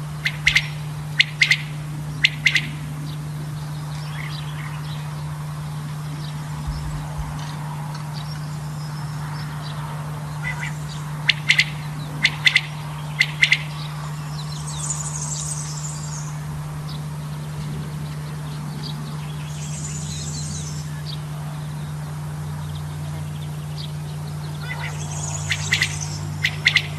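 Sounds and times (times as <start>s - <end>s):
quail calling: 0.0s - 3.0s, 10.4s - 14.0s, 24.4s - 26.9s
hazy bird twittering: 0.0s - 26.9s
steady low hum: 0.0s - 26.9s.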